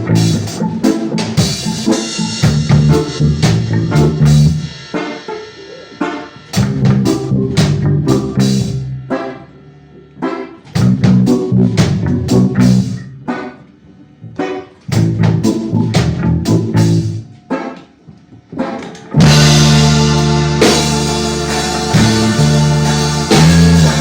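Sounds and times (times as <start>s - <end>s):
heavy bass line: 0.0s - 4.9s, 6.5s - 13.3s, 14.9s - 17.3s, 19.2s - 24.0s
instrumental reggae band: 0.0s - 24.0s.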